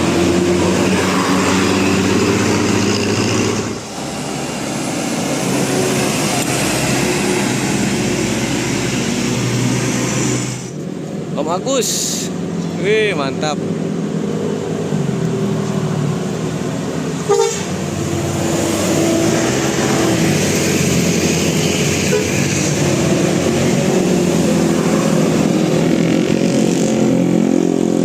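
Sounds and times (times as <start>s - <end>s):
traffic noise: 0.0s - 28.0s
musical vehicle horn tune: 17.3s - 17.7s.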